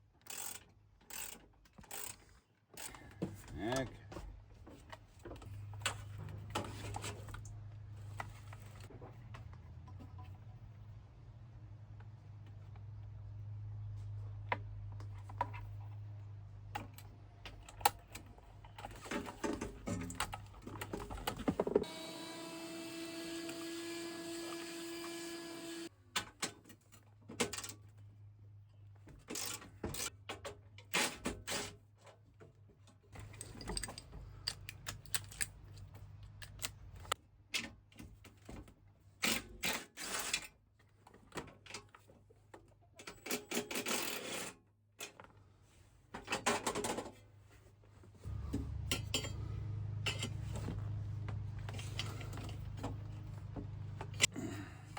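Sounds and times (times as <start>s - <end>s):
power tool whirring: 21.8s - 25.9s
low hum: 48.3s - 54.2s
hand tools clanking on metal: 48.4s - 50.6s.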